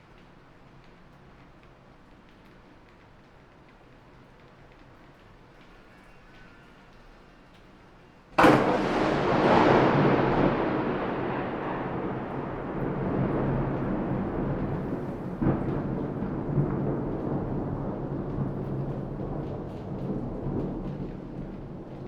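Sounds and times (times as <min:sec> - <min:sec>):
thunder crack and rumble: 0:08.4 - 0:22.0.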